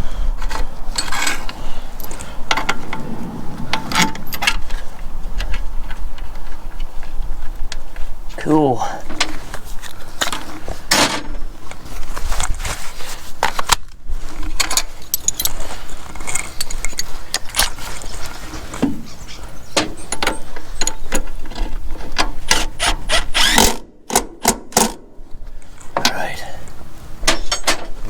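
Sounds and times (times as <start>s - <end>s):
hand tools clicking and clinking: 14.6s - 17.7s.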